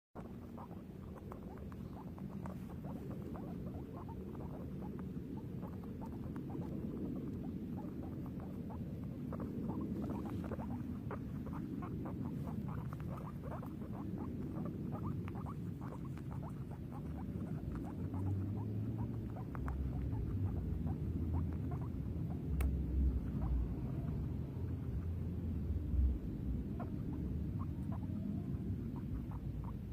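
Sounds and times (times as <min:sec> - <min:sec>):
guinea pig squeaking: 0:00.2 - 0:29.9
low rumble: 0:00.2 - 0:29.9.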